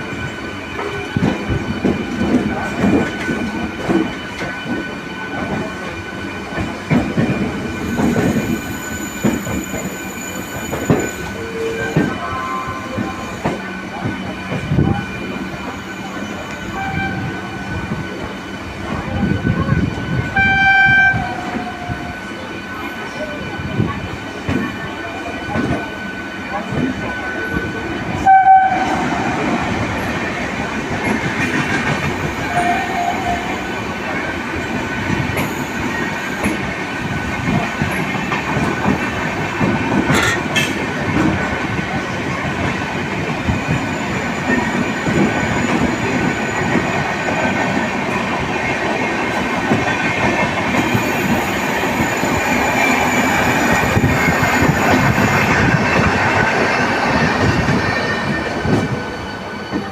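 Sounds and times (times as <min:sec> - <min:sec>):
train wheels clattering on rails: 0:00.0 - 0:59.9
train horn blast: 0:16.7 - 0:17.6, 0:20.4 - 0:22.0, 0:28.2 - 0:29.4, 0:32.5 - 0:33.6.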